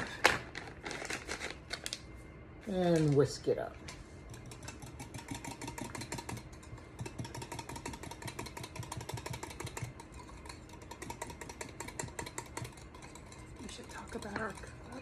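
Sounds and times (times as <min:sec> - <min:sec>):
whisk clicking against bowl: 0:04.3 - 0:15.0.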